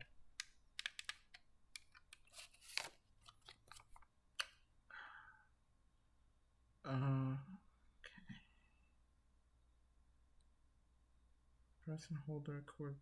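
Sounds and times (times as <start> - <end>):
plastic toy clicks and crinkles: 0.4 - 4.0
packaging rustle: 2.2 - 4.0.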